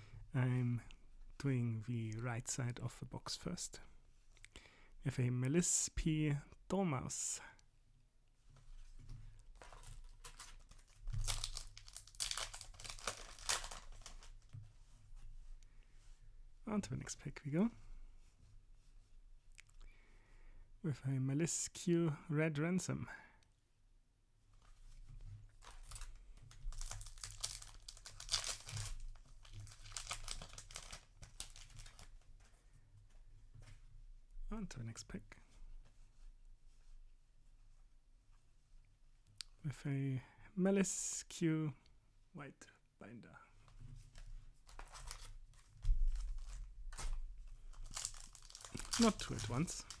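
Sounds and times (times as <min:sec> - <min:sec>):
cards being handled: 0:09.5 - 0:14.5, 0:25.6 - 0:32.5, 0:44.2 - 0:50.0
foil wrapper crinkling and tearing: 0:09.5 - 0:14.5, 0:25.6 - 0:32.2, 0:44.6 - 0:50.0.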